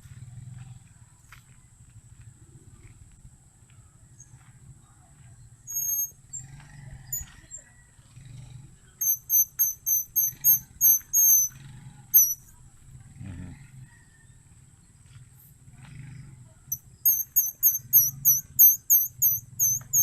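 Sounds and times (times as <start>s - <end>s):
high-pitched flower squeaks: 5.7s - 6.5s, 9.0s - 12.5s, 16.7s - 20.0s.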